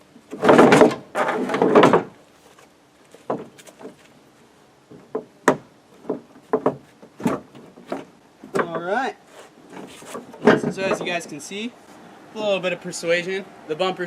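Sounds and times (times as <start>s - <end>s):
bumper cover rubbing and knocking: 0.3s - 2.2s, 4.9s - 11.3s.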